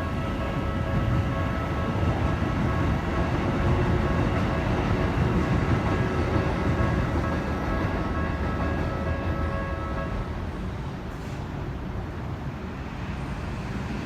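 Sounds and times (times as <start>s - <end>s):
crossing warning bells: 0.0s - 10.7s
electric train rumbling over tracks: 0.0s - 14.0s.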